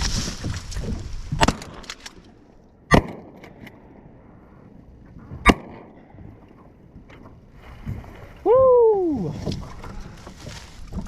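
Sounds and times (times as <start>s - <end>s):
shotgun shots: 2.9s - 3.3s, 5.5s - 5.9s.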